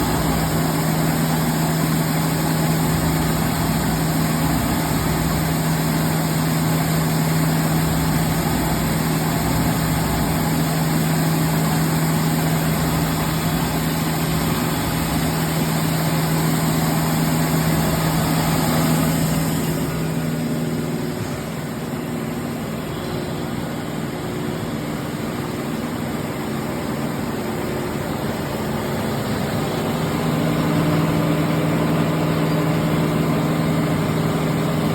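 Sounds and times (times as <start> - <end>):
grinder machine hum: 0.0 - 22.9.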